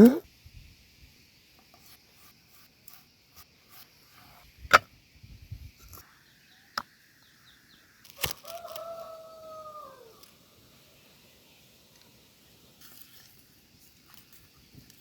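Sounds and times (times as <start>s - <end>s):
rooster crowing: 8.2s - 10.3s.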